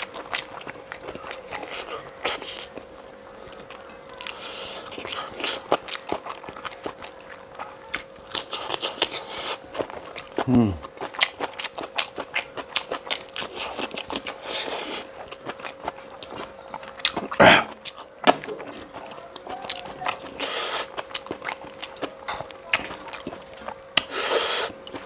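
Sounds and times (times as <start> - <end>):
person chewing and biting: 3.6 - 25.0
hissy slurps or breaths: 20.4 - 20.9, 24.0 - 24.8.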